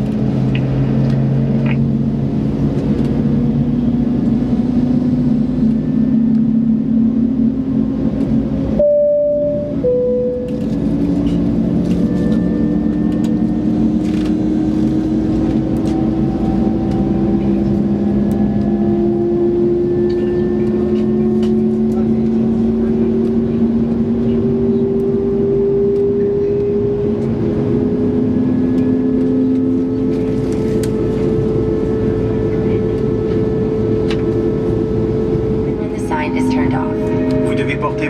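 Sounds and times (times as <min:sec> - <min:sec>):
aircraft cabin engine hum: 0:00.0 - 0:38.0
two-note falling tone: 0:08.8 - 0:10.6, 0:36.2 - 0:38.0.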